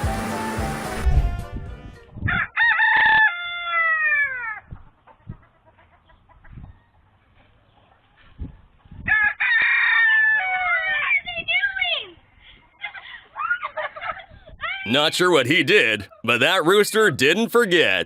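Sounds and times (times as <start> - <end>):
rooster crowing: 2.2 - 4.7, 9.0 - 11.0.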